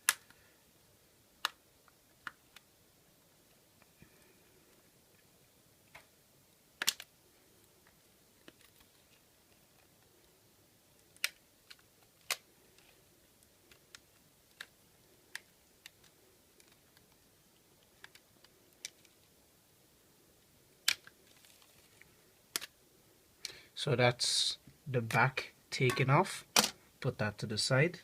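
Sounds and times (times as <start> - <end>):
plastic clips snapping loose: 6.8 - 7.1, 11.2 - 12.4, 22.5 - 22.7, 26.6 - 26.8.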